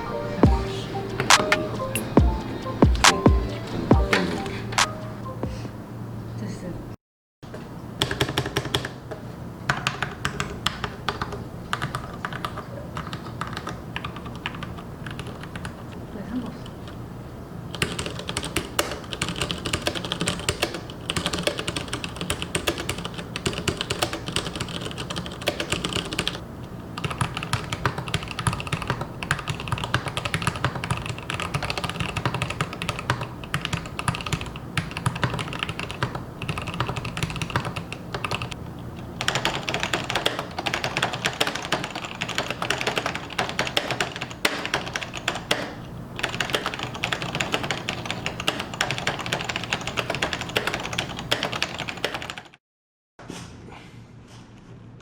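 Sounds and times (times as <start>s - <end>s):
mechanical keyboard typing: 8.0s - 9.0s, 9.7s - 15.9s, 17.7s - 26.4s, 27.0s - 38.6s, 39.2s - 52.6s.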